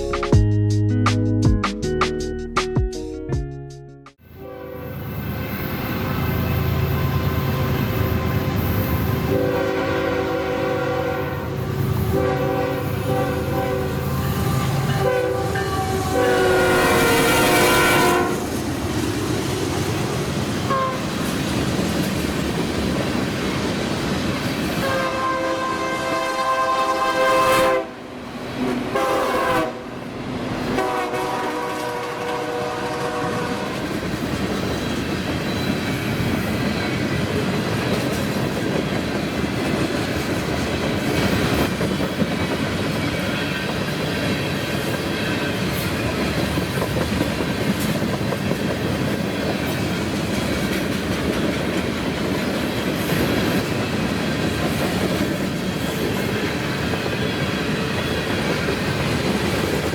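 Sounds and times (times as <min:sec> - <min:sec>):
train rumbling past: 0:04.2 - 0:59.9
locomotive horn blasts: 0:04.3 - 0:05.1, 0:06.7 - 0:18.5, 0:20.7 - 0:21.0, 0:24.8 - 0:28.0, 0:28.9 - 0:29.9, 0:30.7 - 0:33.8.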